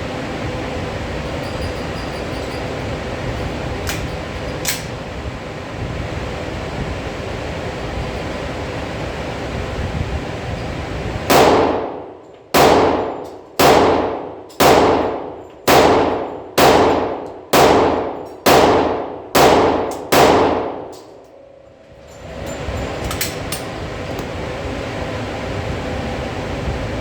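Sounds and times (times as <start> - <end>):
pistol shots echoing: 11.3 - 21.0.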